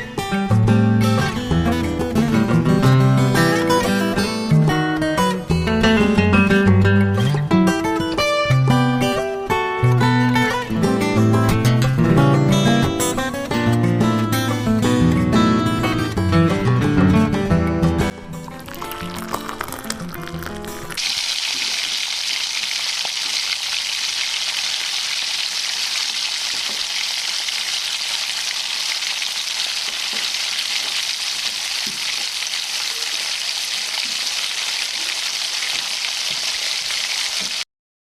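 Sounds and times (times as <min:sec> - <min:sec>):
food sizzling in hot oil: 0:18.4 - 0:37.6.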